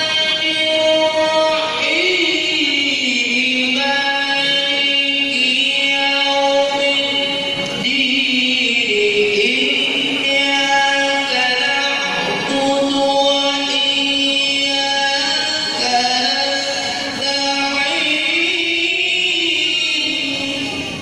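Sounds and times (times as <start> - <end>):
man chanting melodic recitation: 0.0 - 21.0.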